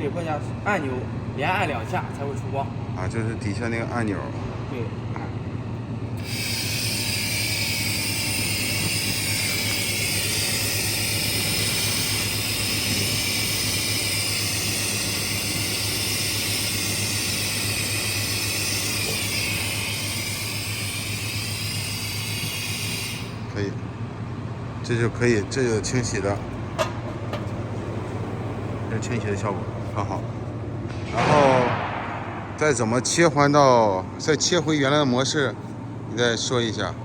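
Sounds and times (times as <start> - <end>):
machine low hum: 0.0 - 37.0
laser cleaning gun hissing: 6.2 - 23.4.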